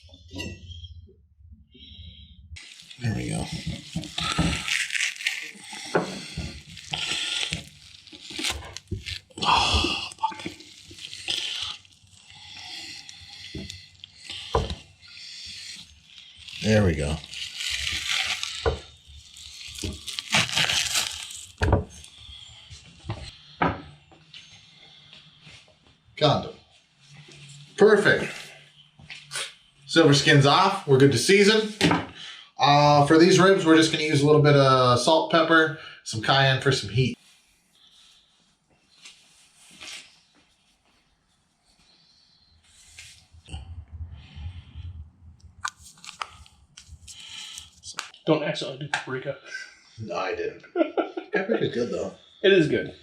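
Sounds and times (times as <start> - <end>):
wet tearing of meat skin: 2.6 - 14.8, 16.1 - 22.2.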